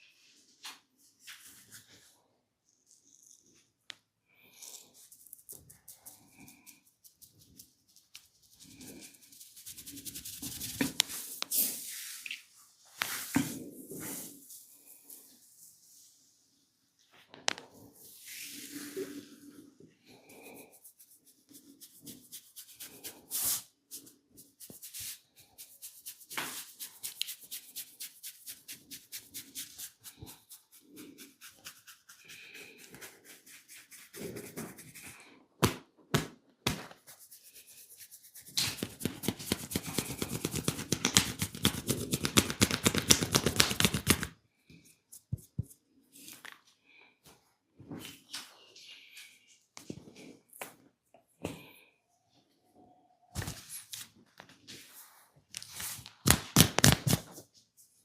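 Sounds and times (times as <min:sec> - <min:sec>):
hands rubbing and slapping skin: 0:05.0 - 0:12.4, 0:20.8 - 0:44.4, 0:55.6 - 0:57.4
fast rhythmic hand strokes: 0:37.0 - 0:44.3.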